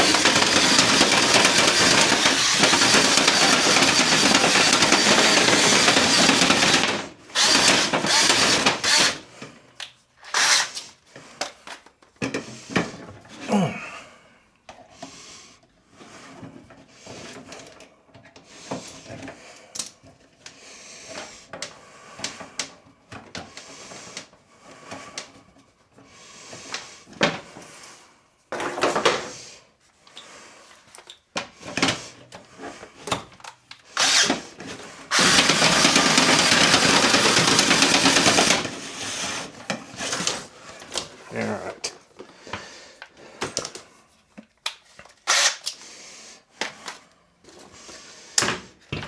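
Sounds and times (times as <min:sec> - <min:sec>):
power drill spinning: 0:00.0 - 0:09.3, 0:10.2 - 0:10.9, 0:34.0 - 0:41.0, 0:45.3 - 0:45.8.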